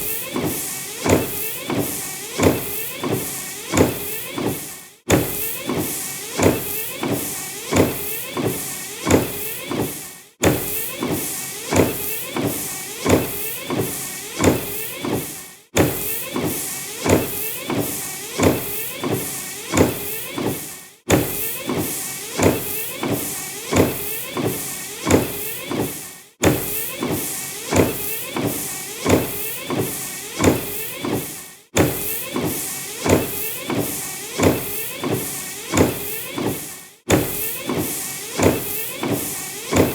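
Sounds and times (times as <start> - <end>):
wiper knock: 26.4 - 26.8, 31.8 - 32.1, 37.1 - 37.4.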